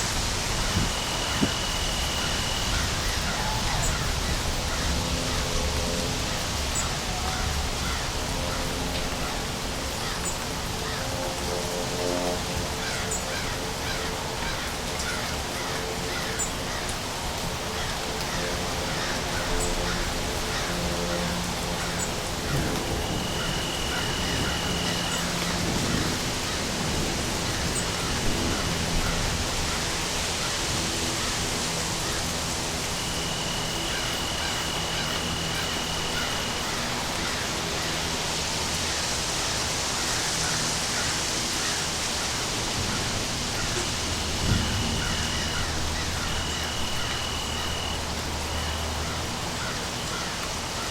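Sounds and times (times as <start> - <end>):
steady rain: 0.0 - 50.9.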